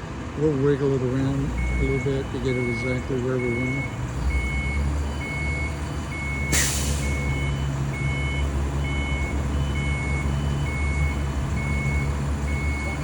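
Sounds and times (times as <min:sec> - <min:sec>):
heavy engine running: 0:00.0 - 0:13.0
backup alarm beeping: 0:01.6 - 0:13.0
air hiss: 0:06.5 - 0:07.2.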